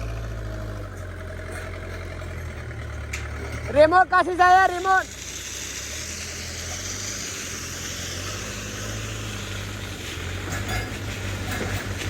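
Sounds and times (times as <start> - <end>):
diesel machinery humming: 0.0 - 12.0.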